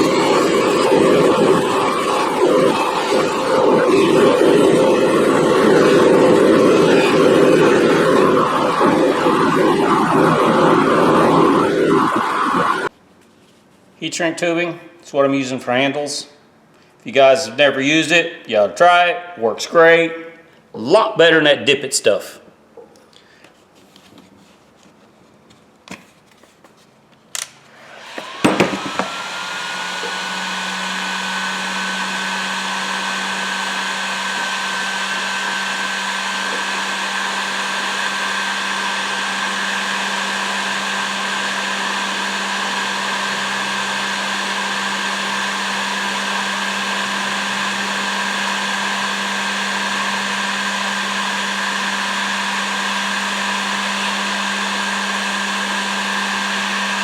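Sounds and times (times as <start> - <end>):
heat gun fan whine: 0.0 - 13.0, 27.3 - 57.0.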